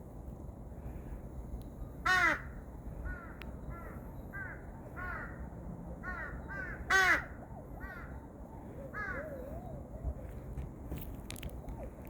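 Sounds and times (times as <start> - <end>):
pet animal calling: 7.0 - 10.4.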